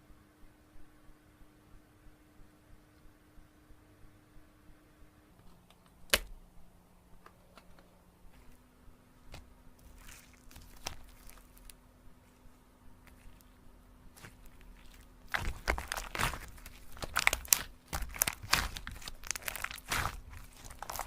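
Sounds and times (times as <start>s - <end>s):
slime clicking and crackling: 9.3s - 11.8s, 13.0s - 21.0s.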